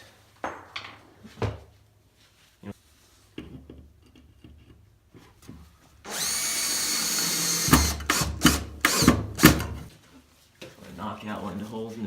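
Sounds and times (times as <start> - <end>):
power drill whining: 6.1 - 9.8.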